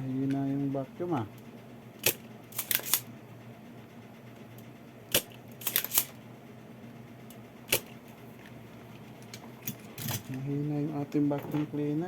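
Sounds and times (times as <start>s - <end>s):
desoldering pump snapping: 2.0s - 3.1s, 4.5s - 6.2s, 7.2s - 8.5s.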